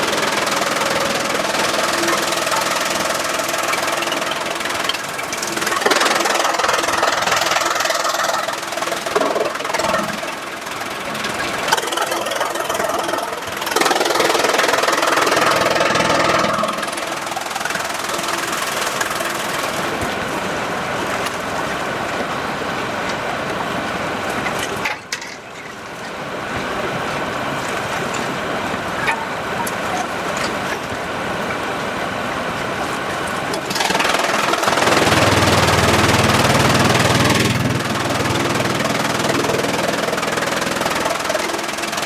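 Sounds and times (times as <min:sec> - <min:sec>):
sawmill machinery running: 0:00.0 - 0:42.0
low hum: 0:34.9 - 0:41.6.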